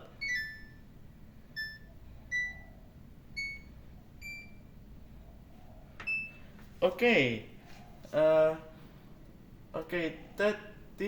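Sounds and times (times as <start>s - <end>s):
washing machine beeps rising: 0.2s - 0.9s, 1.5s - 4.8s, 6.0s - 6.5s.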